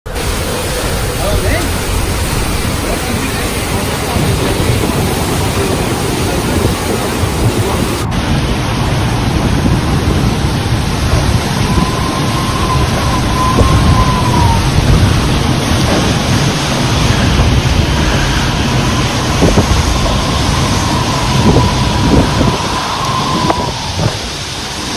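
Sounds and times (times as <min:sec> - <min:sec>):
wind and rain rushing: 0:00.1 - 0:24.9
thin wavering whistle: 0:11.5 - 0:15.3, 0:18.2 - 0:24.3.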